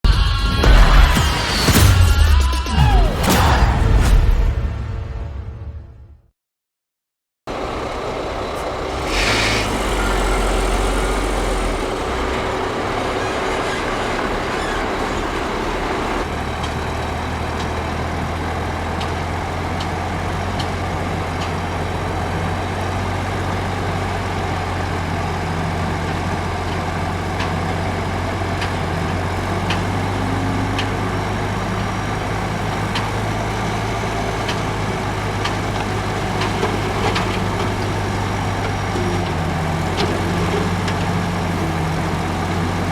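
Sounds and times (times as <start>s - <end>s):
diesel construction machinery running: 7.5s - 42.9s
short hiss: 8.9s - 10.5s.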